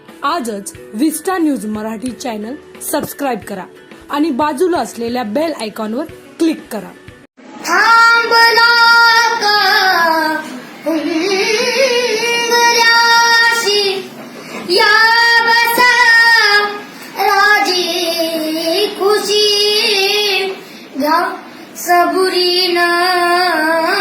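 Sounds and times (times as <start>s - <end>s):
child singing wordless notes: 7.6s - 24.0s.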